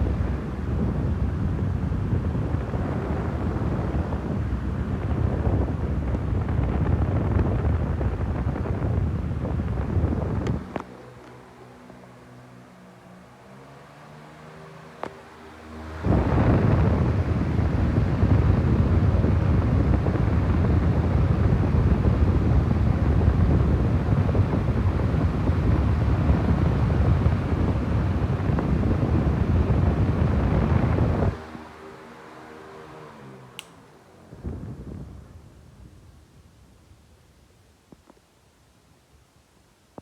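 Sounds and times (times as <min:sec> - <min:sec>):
fan motor hum: 0:00.0 - 0:37.2
fan wind rumble on microphone: 0:00.0 - 0:40.0
click: 0:33.6 - 0:33.8.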